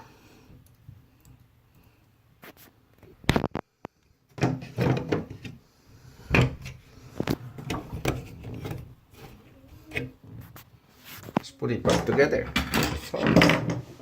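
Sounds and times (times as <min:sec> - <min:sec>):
faucet parts knocking and scraping: 0:04.4 - 0:05.6, 0:06.3 - 0:10.4, 0:11.8 - 0:14.0.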